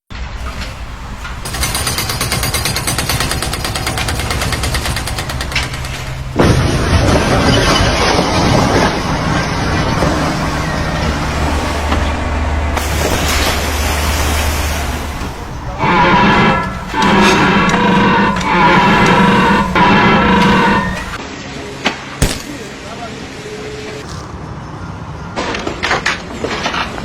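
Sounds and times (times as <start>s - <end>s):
machinery rattling and rumbling: 0.2s - 21.2s.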